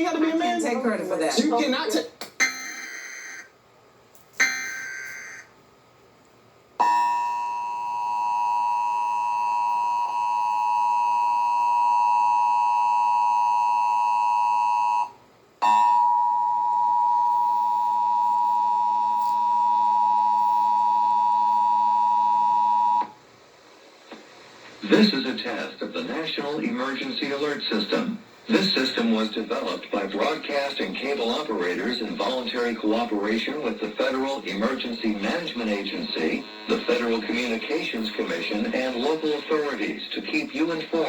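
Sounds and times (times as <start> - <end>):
two-tone attention signal: 4.4 - 5.4.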